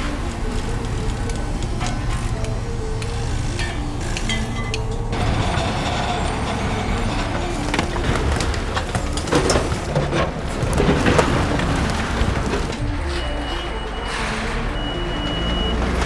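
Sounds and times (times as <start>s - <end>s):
construction machinery rumbling: 0.0s - 16.0s
clattering knocks and scrapes: 3.6s - 16.0s.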